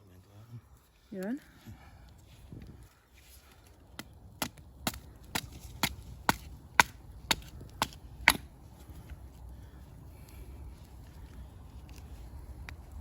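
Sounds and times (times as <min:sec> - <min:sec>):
wood chopping strikes: 0:04.0 - 0:08.5.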